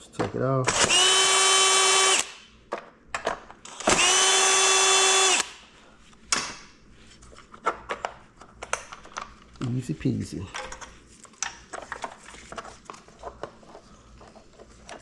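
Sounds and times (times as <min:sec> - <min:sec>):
cordless drill whirring: 0:00.7 - 0:02.4, 0:03.7 - 0:05.6.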